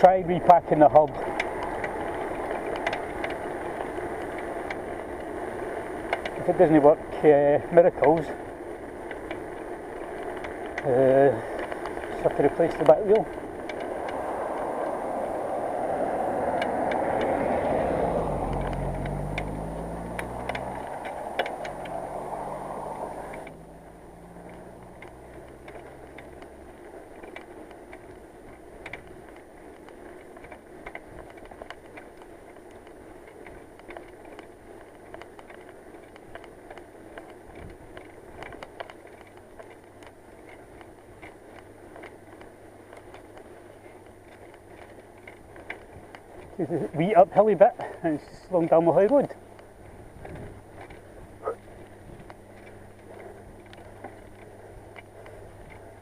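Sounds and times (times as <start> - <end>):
cycling noise: 0.0 - 56.0
faint clicks: 0.5 - 6.7, 7.8 - 15.4, 16.0 - 56.0
vehicle passing close by: 10.0 - 26.8.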